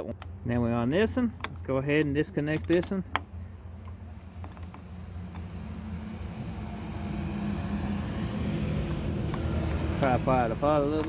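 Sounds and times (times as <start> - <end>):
low vehicle rumble: 3.2 - 11.0.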